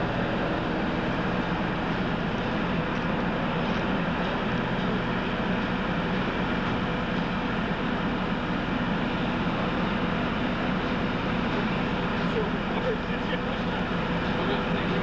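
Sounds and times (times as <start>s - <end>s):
generators droning: 9.2s - 15.0s.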